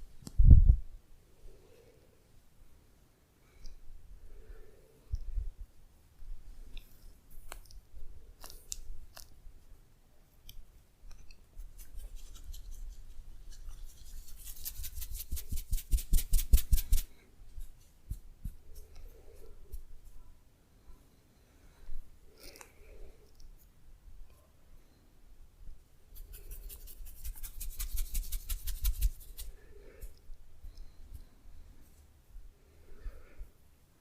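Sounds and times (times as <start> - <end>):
hands rubbing and clicking: 6.7 - 7.8, 10.4 - 20.2, 26.2 - 30.2.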